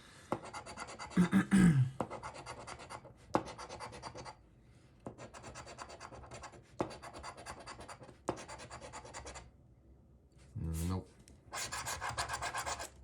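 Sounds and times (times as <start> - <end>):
lottery ticket being scratched: 11.6 - 13.0.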